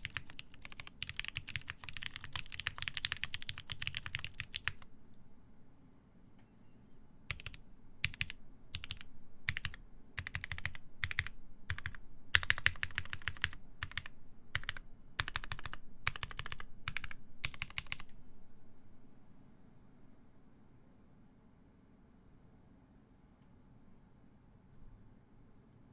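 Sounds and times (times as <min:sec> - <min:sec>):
typing on mechanical keyboard: 0:00.0 - 0:04.9, 0:07.3 - 0:18.2.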